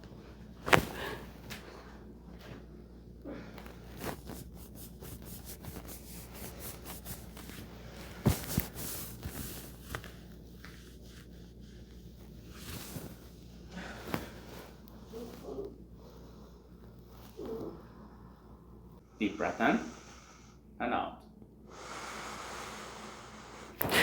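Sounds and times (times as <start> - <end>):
rustling on treatment table: 0.0 - 17.8.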